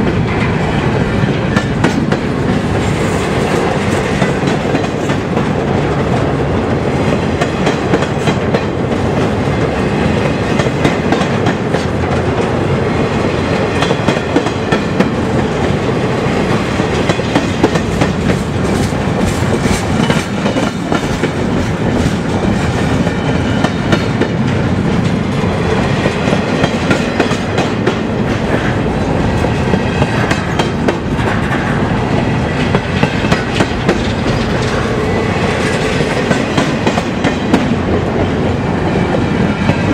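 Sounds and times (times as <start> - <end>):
freight train rumbling: 0.0 - 39.9
wheels clicking over rail joints: 16.8 - 38.3.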